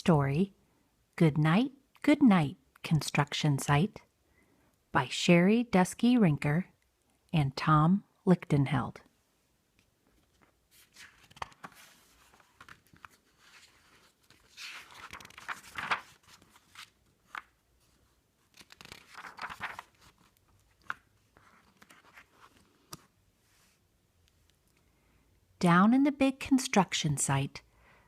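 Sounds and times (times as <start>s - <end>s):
paper pages rustling: 9.8s - 23.8s.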